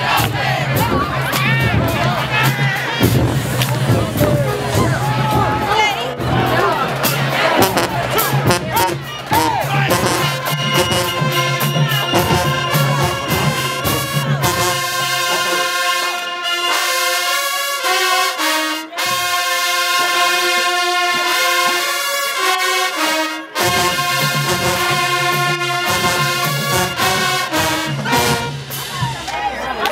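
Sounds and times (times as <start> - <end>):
drum hits: 0.0 - 14.9
marching band brass playing: 0.0 - 29.7.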